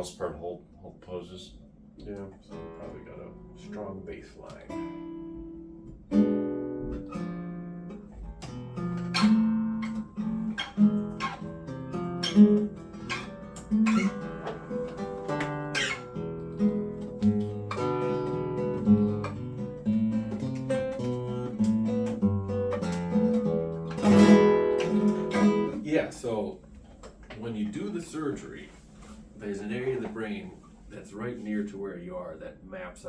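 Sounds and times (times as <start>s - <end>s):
acoustic guitar playing: 2.0s - 26.1s.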